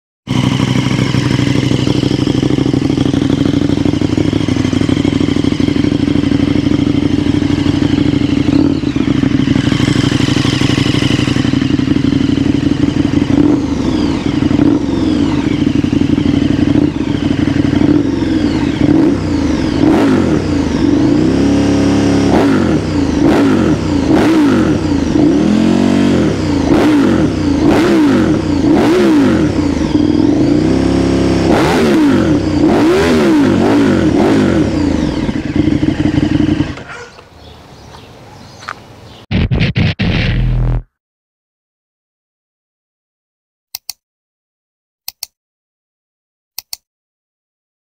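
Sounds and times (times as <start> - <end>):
motorcycle engine idling: 0.3 - 31.4, 33.6 - 38.7
engine revving in throttle blips: 0.3 - 37.3
exhaust cracks: 39.3 - 40.9.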